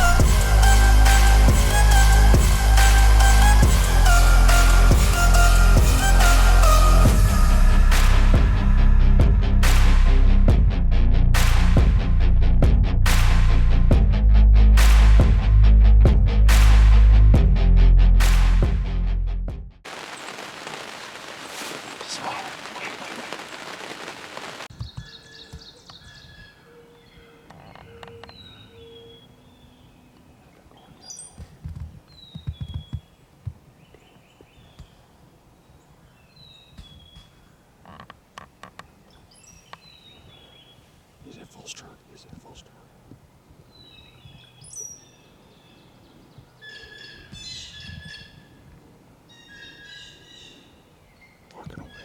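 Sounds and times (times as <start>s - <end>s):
rushing hiss: 19.9s - 24.7s
wild birds calling: 19.9s - 29.9s, 49.3s - 52.0s
songbirds chirping: 20.0s - 31.5s, 38.7s - 48.6s, 49.2s - 52.0s.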